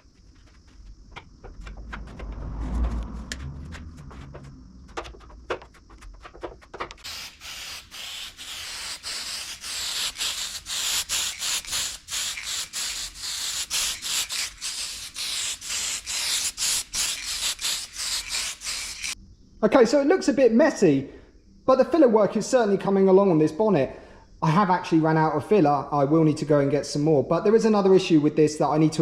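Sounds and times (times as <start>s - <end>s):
sandpaper rubbing back and forth: 7.0s - 19.2s.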